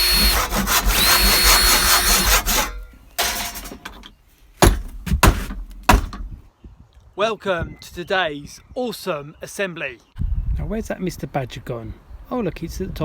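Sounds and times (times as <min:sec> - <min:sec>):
power tool motor whining: 0:00.0 - 0:02.9
sharp knocks: 0:02.0 - 0:06.4.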